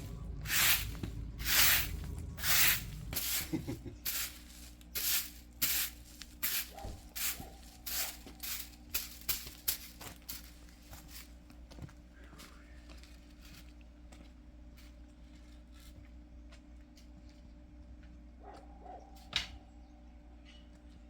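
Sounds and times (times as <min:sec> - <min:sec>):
rhythmic rasping strokes: 0:00.0 - 0:09.9
faint steady hum: 0:00.0 - 0:21.0.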